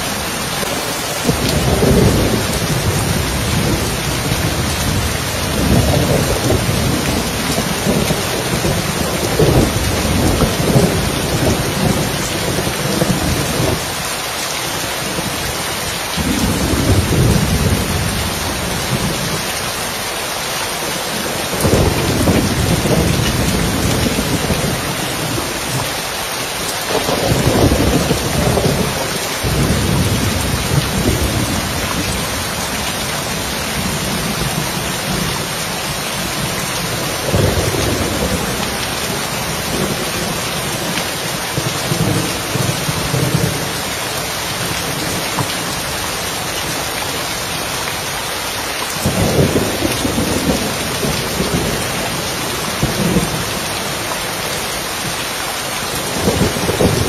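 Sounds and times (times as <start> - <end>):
thunder rumbling: 0.0 - 13.9, 21.2 - 25.8, 26.9 - 43.8, 49.0 - 54.0, 55.9 - 57.0
heavy rain on a roof: 0.0 - 57.0.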